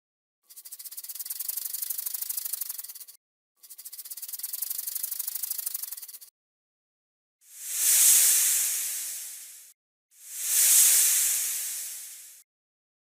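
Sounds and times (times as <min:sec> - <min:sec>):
snake hissing: 0:00.5 - 0:06.2, 0:07.5 - 0:12.4.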